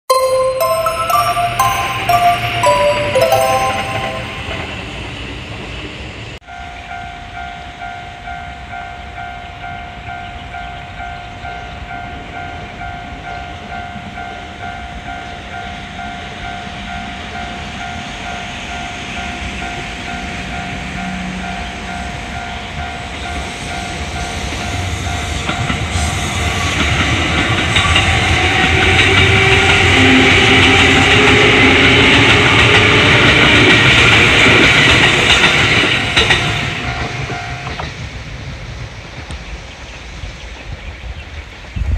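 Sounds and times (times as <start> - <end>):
level crossing bell clanging: 0.1 - 5.1.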